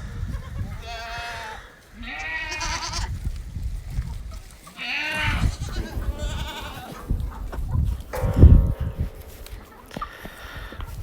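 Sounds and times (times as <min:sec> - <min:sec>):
goats bleating: 0:00.2 - 0:03.2, 0:04.6 - 0:07.6.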